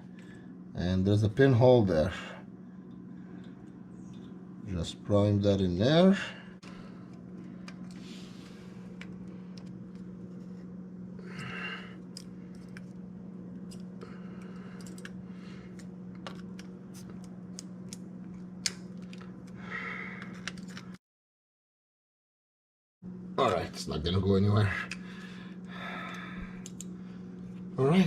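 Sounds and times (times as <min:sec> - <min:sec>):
low hum: 0:00.0 - 0:21.0.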